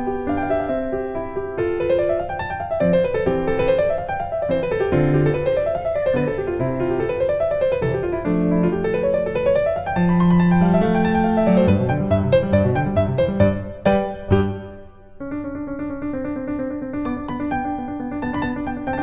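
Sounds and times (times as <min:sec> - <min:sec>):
piano arpeggios: 0:00.0 - 0:19.0.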